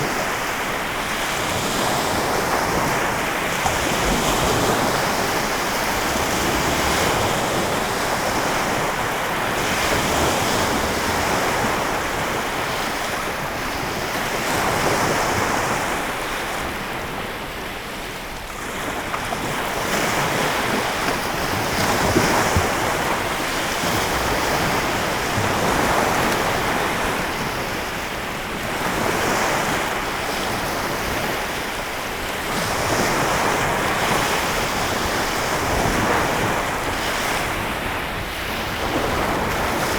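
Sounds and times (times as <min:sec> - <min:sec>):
waves breaking on shore: 0:00.0 - 0:39.9.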